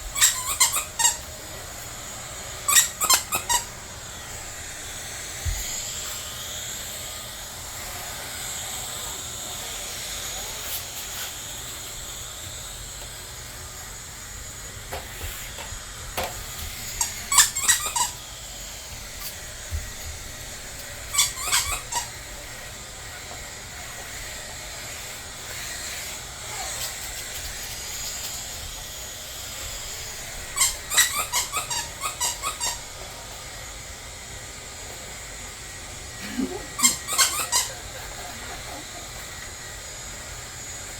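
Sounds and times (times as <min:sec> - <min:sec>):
squeaky dog toy squeaking: 0:00.1 - 0:01.3, 0:02.7 - 0:03.8, 0:17.0 - 0:18.2, 0:21.1 - 0:22.2, 0:30.6 - 0:32.8, 0:36.8 - 0:37.7.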